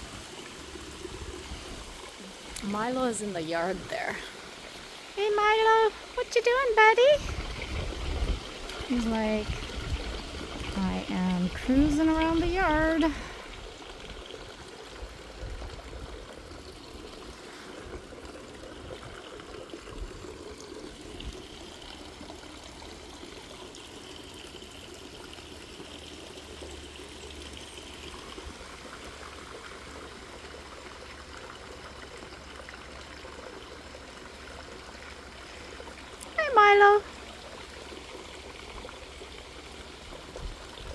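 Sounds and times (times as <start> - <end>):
wind rumbling on microphone: 7.0 - 14.3, 14.9 - 16.6.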